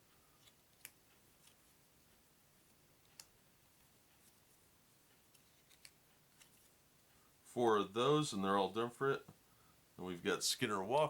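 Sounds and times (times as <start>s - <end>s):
playing cards clicking: 5.3s - 6.7s.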